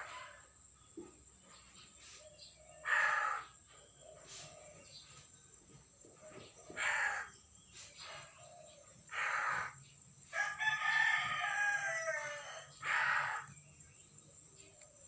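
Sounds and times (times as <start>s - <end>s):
bird screeching: 2.8s - 3.5s, 6.8s - 7.3s, 9.1s - 9.8s, 12.1s - 13.5s.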